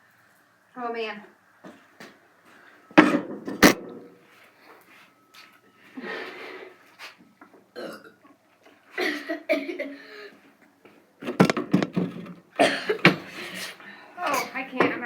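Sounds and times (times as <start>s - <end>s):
person burping: 7.7s - 8.2s.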